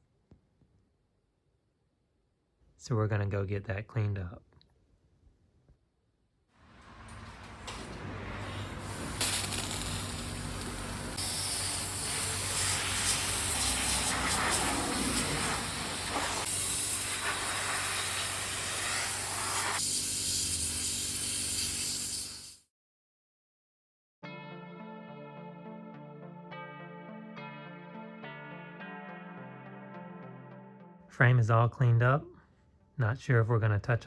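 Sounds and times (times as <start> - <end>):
pressure washer motor hum: 6.6 - 22.4
water spray hissing: 7.9 - 22.6.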